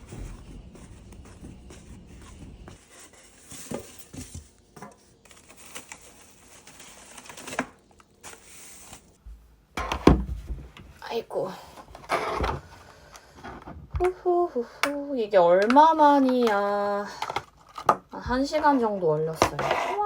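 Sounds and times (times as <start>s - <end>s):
packaging rustling: 0.0s - 9.2s
knocks and clicks of items: 9.8s - 10.9s.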